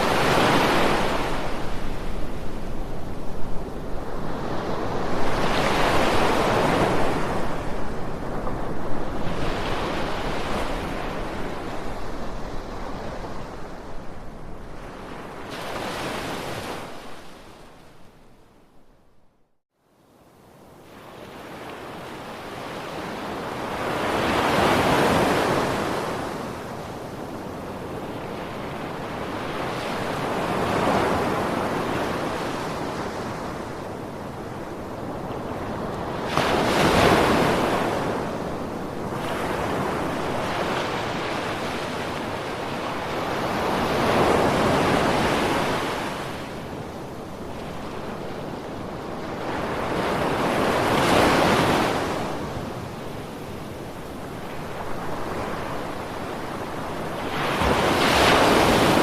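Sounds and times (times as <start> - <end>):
ocean waves breaking: 0.0 - 3.0, 3.6 - 18.0, 47.5 - 59.0.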